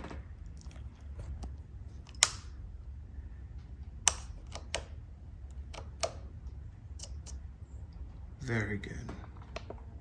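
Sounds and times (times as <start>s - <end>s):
low steady hum: 0.0s - 10.0s
sharp clicks and taps: 4.0s - 4.9s.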